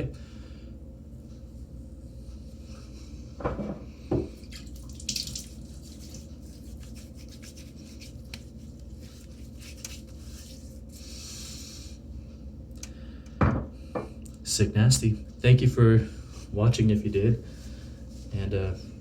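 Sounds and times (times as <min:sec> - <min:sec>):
water splashing in a sink: 0:04.3 - 0:07.5
small drips and clicks: 0:04.4 - 0:06.3.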